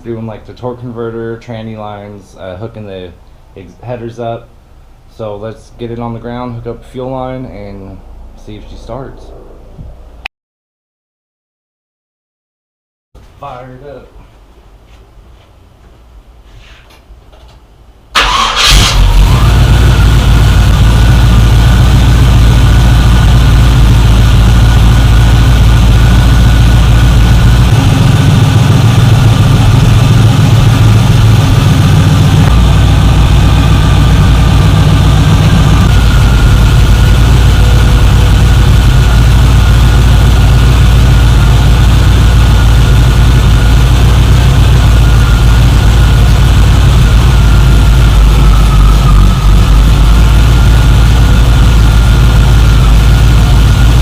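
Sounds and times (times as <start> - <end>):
engine idling loud: 18.2 - 54.0.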